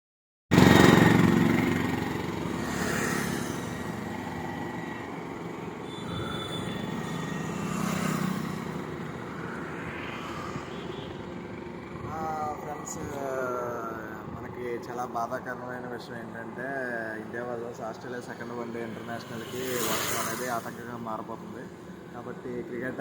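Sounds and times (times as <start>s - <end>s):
loud passing engine: 0.5s - 14.4s, 18.0s - 21.0s
passing vehicles: 0.5s - 23.0s.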